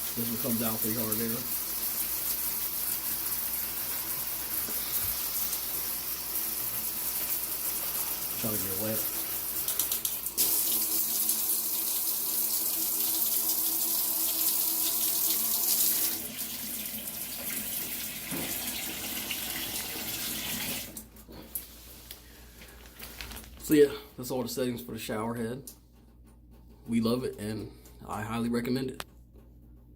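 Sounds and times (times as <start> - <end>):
shower head spraying water: 0.0 - 16.4.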